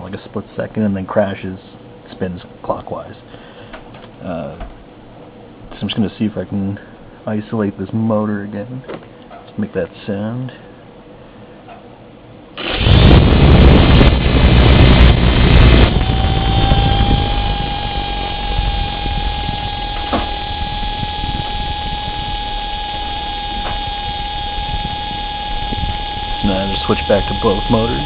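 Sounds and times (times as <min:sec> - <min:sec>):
electric motor whining: 0:12.6 - 0:28.0.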